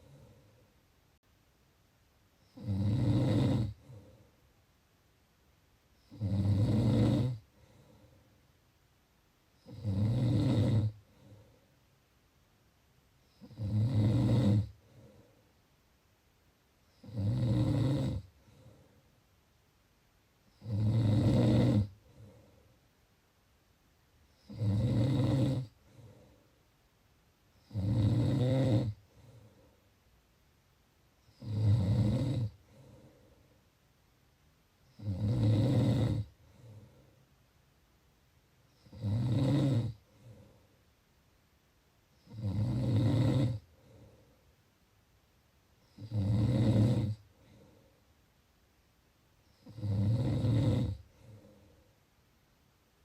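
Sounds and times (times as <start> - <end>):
soft breath: 0.0 - 0.9, 3.8 - 4.6, 7.4 - 8.6, 11.0 - 11.9, 14.7 - 15.8, 18.2 - 19.3, 21.9 - 23.0, 25.7 - 26.8, 29.0 - 30.1, 32.6 - 33.8, 36.3 - 37.4, 40.0 - 40.9, 43.6 - 44.7, 47.2 - 48.2, 51.0 - 52.1
person snoring: 2.4 - 4.2, 6.0 - 8.1, 9.6 - 11.5, 13.3 - 15.2, 16.9 - 18.9, 20.5 - 22.4, 24.4 - 26.2, 27.6 - 29.5, 31.2 - 33.2, 34.9 - 36.9, 38.8 - 40.6, 42.2 - 44.1, 45.8 - 47.8, 49.5 - 51.7.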